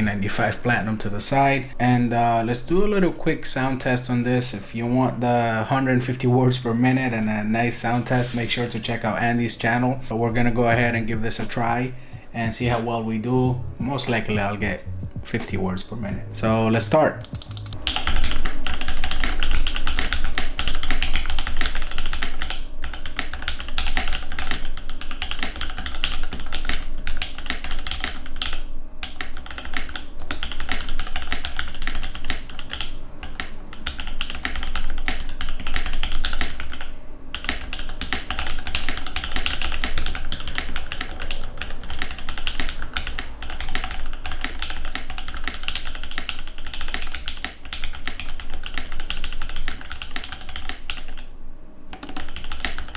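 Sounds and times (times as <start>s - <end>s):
mechanical keyboard typing: 17.2s - 51.2s, 51.9s - 52.9s.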